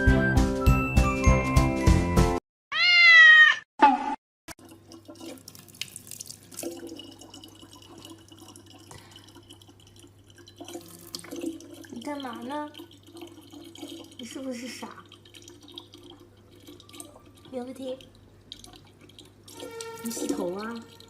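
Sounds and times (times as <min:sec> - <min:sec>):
music jingle: 0:00.0 - 0:02.4
cat meowing: 0:02.7 - 0:03.7.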